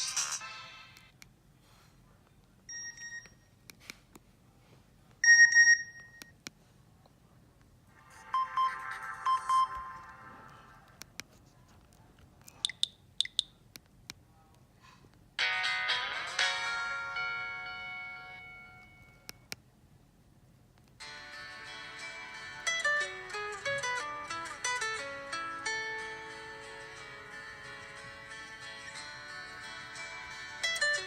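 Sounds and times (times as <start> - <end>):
mobile phone alert beeps: 5.2 - 6.3, 8.2 - 10.1, 12.6 - 13.5
melodic phone notes: 8.0 - 10.8, 15.4 - 19.4.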